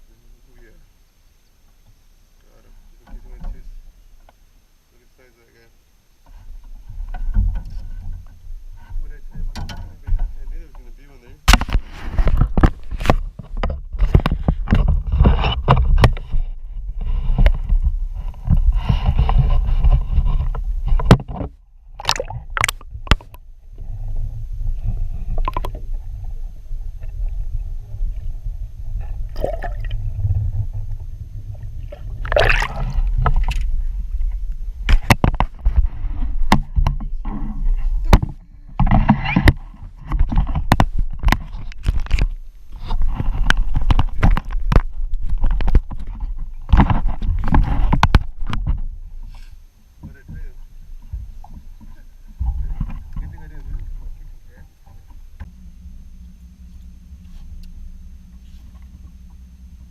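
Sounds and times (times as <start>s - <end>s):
handling knocks and scrapes on boat: 3.0s - 3.8s, 6.2s - 29.3s, 30.0s - 55.5s, 58.3s - 59.4s
wind rumbling on microphone: 6.3s - 59.9s
water gurgling: 21.9s - 35.2s.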